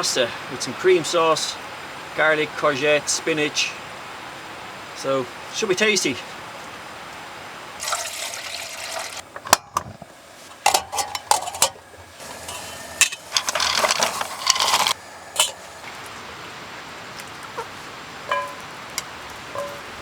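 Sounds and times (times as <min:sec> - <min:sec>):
utensils and pans clinking: 0:08.9 - 0:15.9, 0:18.3 - 0:20.0
rustly clatter: 0:09.4 - 0:15.9, 0:18.3 - 0:20.0.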